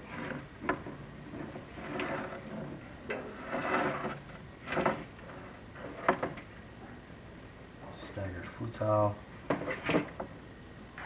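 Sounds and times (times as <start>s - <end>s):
camera scraping against tile walls: 1.3s - 6.1s.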